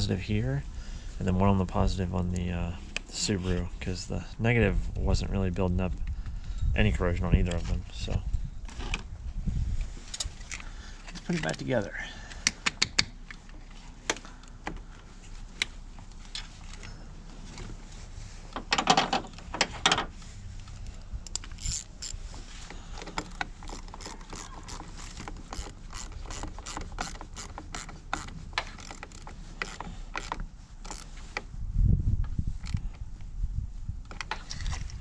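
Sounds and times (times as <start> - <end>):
ratchet wrench clicking: 21.3 - 22.2, 23.2 - 31.1.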